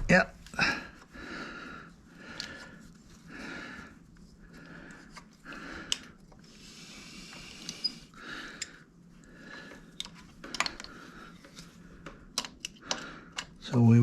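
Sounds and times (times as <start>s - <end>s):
soft breathing: 0.5s - 13.6s
small metal parts clicking: 10.0s - 11.0s.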